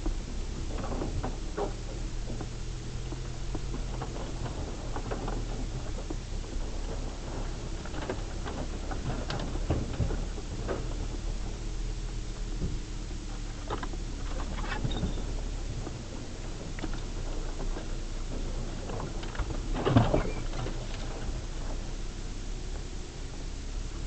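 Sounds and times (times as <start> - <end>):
knocks and rattles: 0.0 - 23.6
engine and road drone: 0.0 - 24.0.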